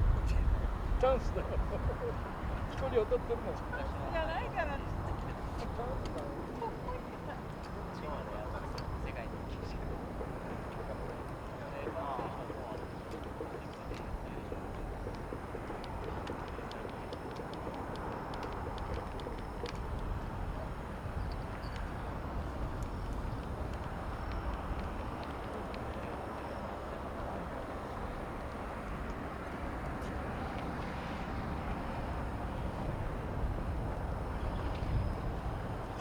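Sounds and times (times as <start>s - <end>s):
jet engines rumbling: 0.0s - 36.0s
faint ticks: 12.7s - 20.3s, 21.2s - 26.8s.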